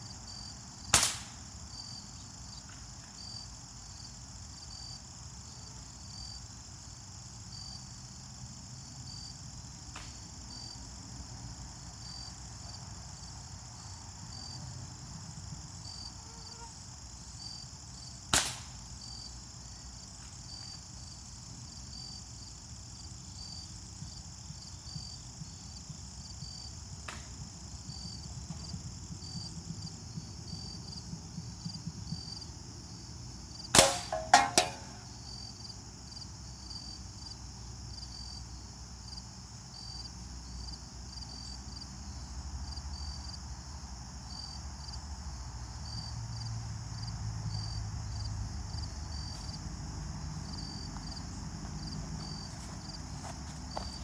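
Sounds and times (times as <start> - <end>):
crickets chirring: 0.0 - 54.0
pellet rifle shots cracking: 1.0 - 1.4, 18.4 - 18.7, 33.8 - 35.1.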